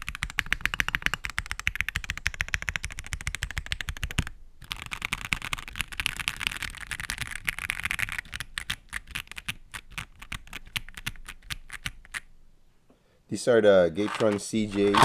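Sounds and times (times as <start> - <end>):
mechanical keyboard typing: 14.0 - 15.0.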